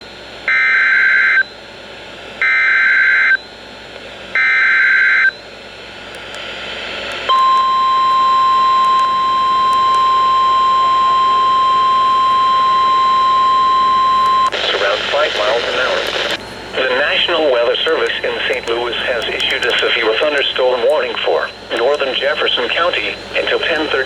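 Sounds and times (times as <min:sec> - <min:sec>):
steady warning alarm tone: 0:00.5 - 0:01.6, 0:02.4 - 0:03.6, 0:04.4 - 0:05.4, 0:07.2 - 0:24.0
hissing static: 0:13.9 - 0:24.0.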